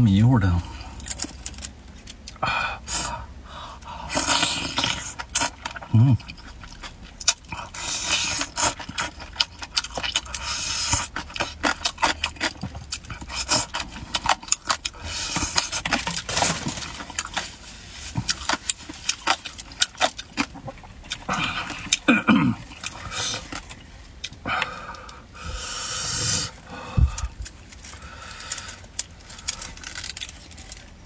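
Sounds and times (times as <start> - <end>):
low hum from the throat: 2.3 - 9.3, 20.5 - 30.0
wet chewing and lip smacks: 3.8 - 16.3, 18.1 - 25.2
noisy breaths or slurps: 24.4 - 30.1.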